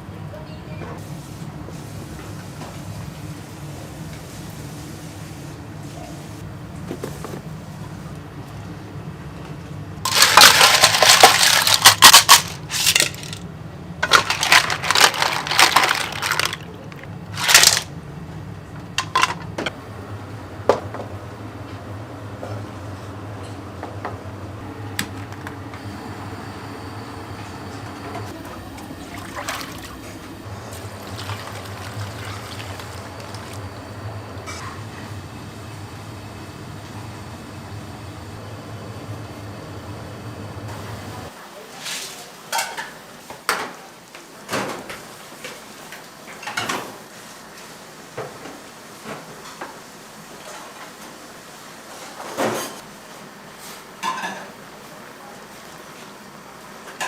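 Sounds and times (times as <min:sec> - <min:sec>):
steady low hum: 0:06.4 - 0:41.3
dishes and utensils clattering: 0:10.1 - 0:13.4, 0:14.0 - 0:16.8, 0:54.0 - 0:54.6.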